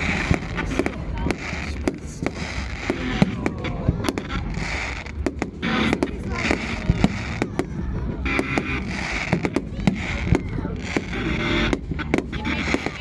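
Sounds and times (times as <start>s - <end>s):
fireworks bangs: 0.0s - 13.0s
low rumble: 0.0s - 13.0s.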